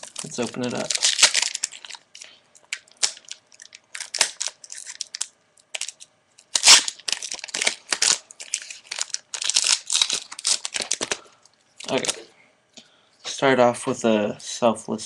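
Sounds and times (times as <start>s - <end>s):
crinkly wrapper tearing and crumpling: 0.0s - 12.3s.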